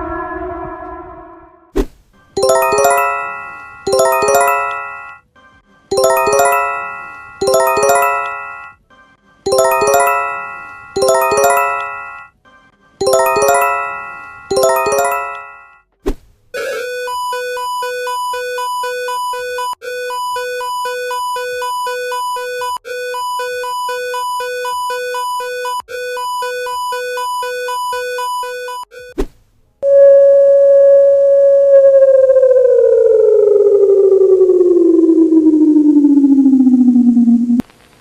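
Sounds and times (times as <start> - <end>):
bell-like electronic alert chime: 2.4 - 5.2, 5.9 - 8.8, 9.5 - 12.3, 13.0 - 15.8.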